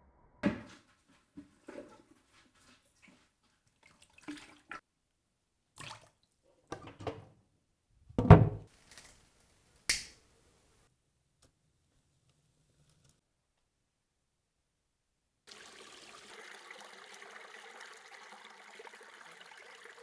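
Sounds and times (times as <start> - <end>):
sharp click: 9.9 - 10.2.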